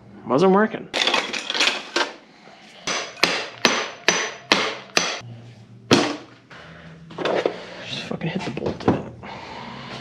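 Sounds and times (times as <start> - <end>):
hammer striking metal bolt: 2.9 - 5.2.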